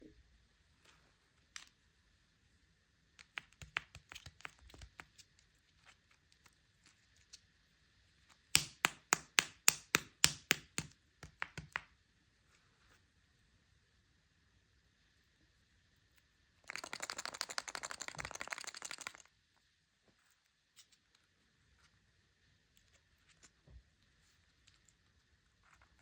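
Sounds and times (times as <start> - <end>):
taps of candy egg on surface: 3.2 - 5.0, 8.5 - 11.9.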